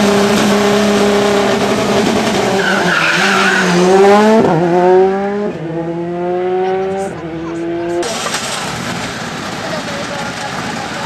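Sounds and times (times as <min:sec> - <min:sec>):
rally car engine revving: 0:00.0 - 0:11.0
tyres spinning and squealing: 0:02.4 - 0:03.9.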